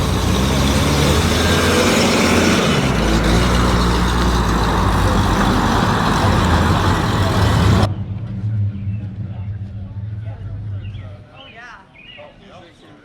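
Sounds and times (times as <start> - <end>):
vehicle engine running: 0.0 - 7.9.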